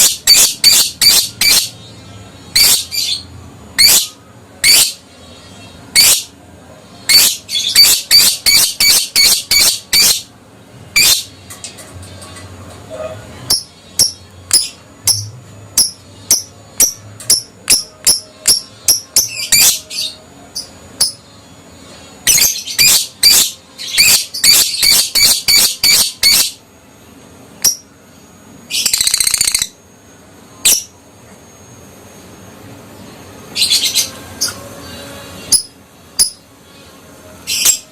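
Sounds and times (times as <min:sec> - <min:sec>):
lovebird chirping: 0:00.0 - 0:01.7, 0:02.5 - 0:05.0, 0:07.0 - 0:10.3, 0:22.2 - 0:26.6.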